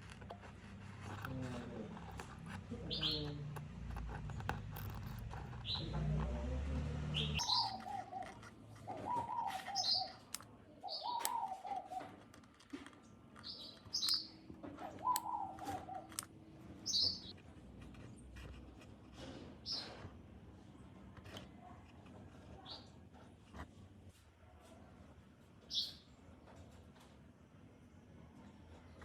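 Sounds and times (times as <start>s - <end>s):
birds calling and chirping: 1.0s - 17.4s, 19.3s - 20.1s, 25.6s - 26.2s.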